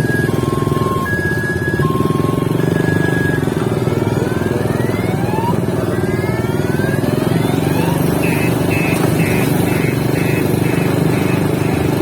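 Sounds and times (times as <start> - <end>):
motorcycle engines droning: 0.0 - 12.0
rapid high beeping: 8.1 - 12.0.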